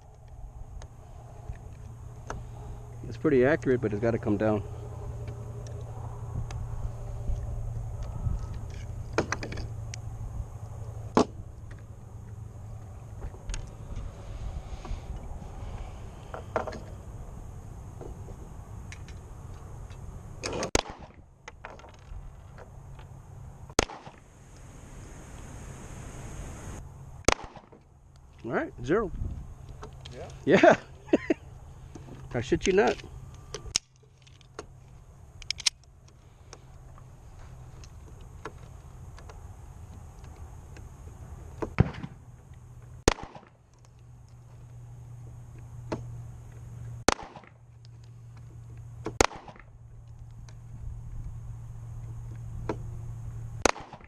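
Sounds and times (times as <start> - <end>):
low steady hum: 0.0 - 54.0
pistol shots: 20.7 - 21.2, 23.8 - 24.2, 27.3 - 27.8, 43.1 - 43.5, 47.1 - 47.5, 49.2 - 49.6, 53.6 - 54.0.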